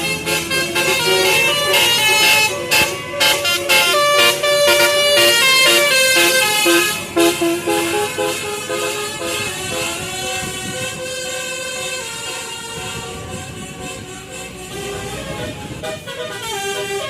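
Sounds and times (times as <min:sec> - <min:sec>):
musical air horn: 0:00.0 - 0:17.0
vehicle noise: 0:00.0 - 0:17.0.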